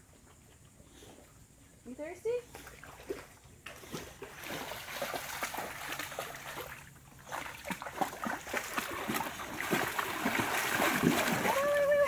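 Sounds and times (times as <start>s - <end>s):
dog lapping water: 2.6s - 12.0s.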